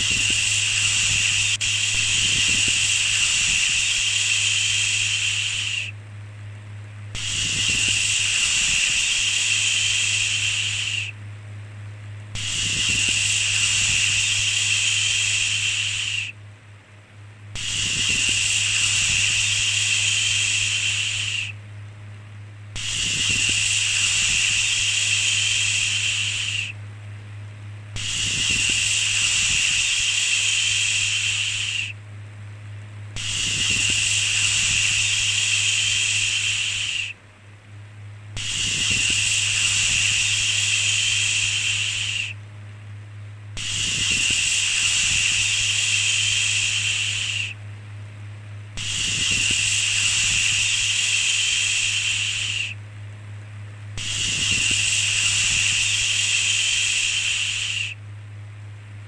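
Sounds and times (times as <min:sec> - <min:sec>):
shushing hiss: 0:00.0 - 0:06.0, 0:07.1 - 0:11.2, 0:12.3 - 0:16.4, 0:17.5 - 0:21.6, 0:22.7 - 0:26.8, 0:27.9 - 0:32.0, 0:33.1 - 0:37.2, 0:38.4 - 0:42.4, 0:43.6 - 0:47.6, 0:48.7 - 0:52.8, 0:54.0 - 0:58.0.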